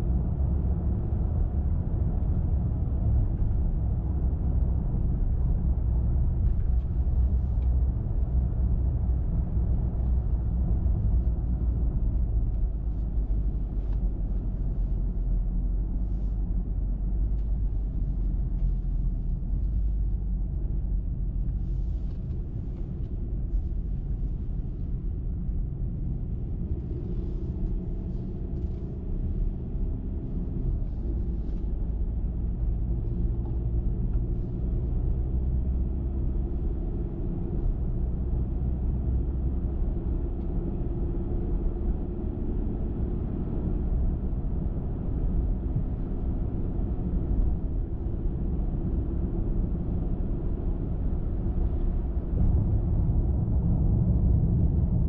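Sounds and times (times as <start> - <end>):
car engine hum: 0.0 - 55.0
road and tyre rumble: 0.0 - 55.0.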